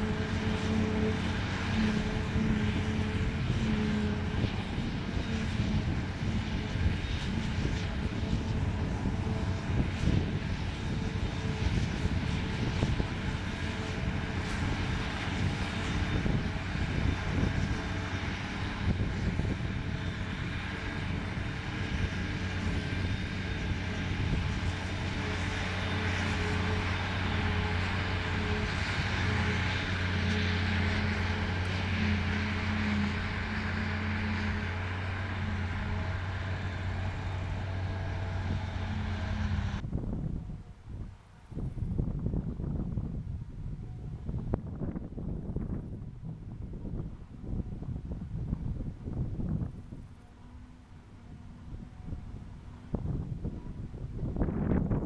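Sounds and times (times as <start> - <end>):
large diesel engine droning: 0.0 - 55.0.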